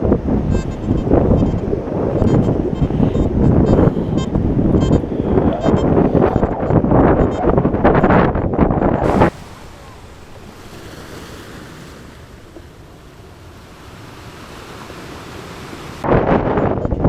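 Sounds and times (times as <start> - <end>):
wind buffeting microphone: 0.0 - 17.0
ocean surf: 9.0 - 16.2.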